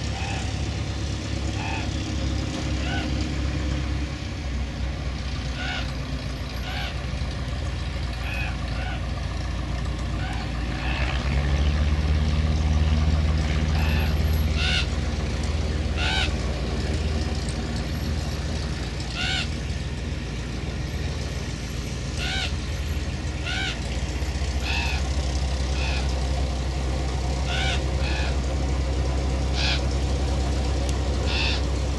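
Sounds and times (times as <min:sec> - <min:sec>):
airplane piston engine running: 0:00.0 - 0:31.9
bird short sharp calls: 0:01.5 - 0:02.0, 0:13.7 - 0:15.0, 0:15.9 - 0:16.4, 0:19.1 - 0:19.6, 0:22.1 - 0:22.7, 0:24.6 - 0:25.1, 0:29.5 - 0:29.9, 0:31.2 - 0:31.7.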